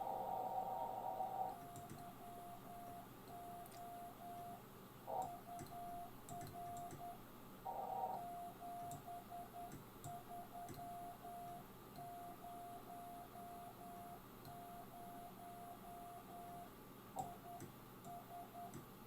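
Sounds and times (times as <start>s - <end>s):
morse code tone: 1.6s - 4.6s.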